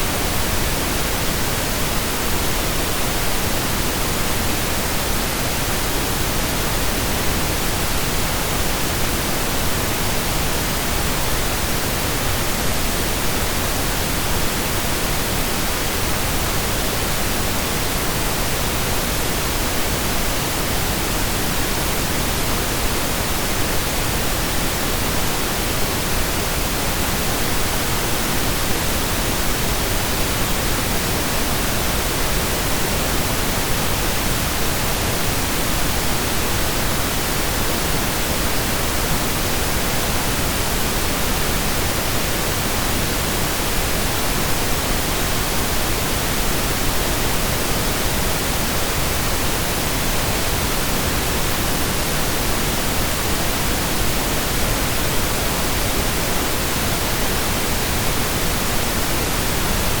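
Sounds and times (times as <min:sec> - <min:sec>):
pink noise hiss: 0:00.0 - 1:00.0.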